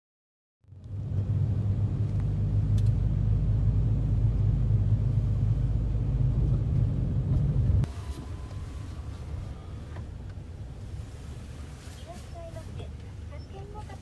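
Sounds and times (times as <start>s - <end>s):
car driving low rumble: 0.6s - 14.0s.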